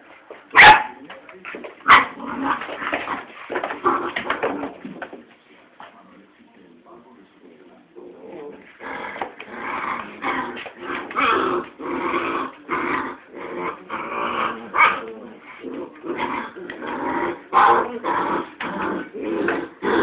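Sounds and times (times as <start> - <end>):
puppies growling and yipping: 8.2 - 20.0.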